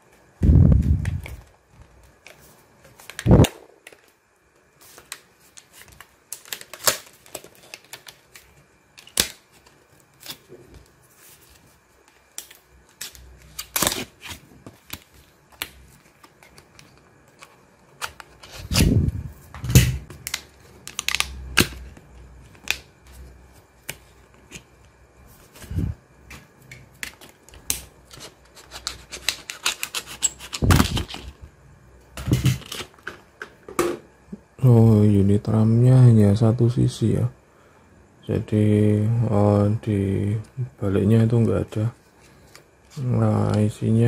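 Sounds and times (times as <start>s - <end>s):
plastic packaging clicks and crinkles: 4.9s - 18.8s, 19.7s - 22.9s, 26.7s - 31.4s.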